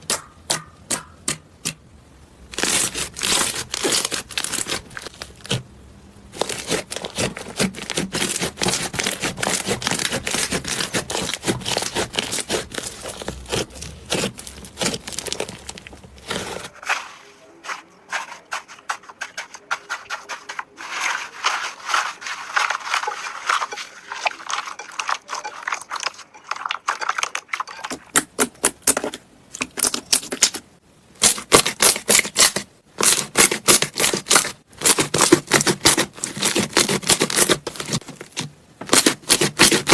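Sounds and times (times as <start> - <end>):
slime crackling and popping: 2.5 - 5.6, 6.3 - 16.8, 28.1 - 30.6.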